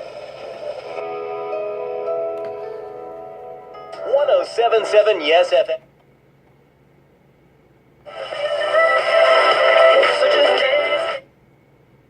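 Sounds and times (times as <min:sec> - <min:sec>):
radio jingle with sung music: 0:00.0 - 0:01.0, 0:04.0 - 0:05.8, 0:08.1 - 0:11.2.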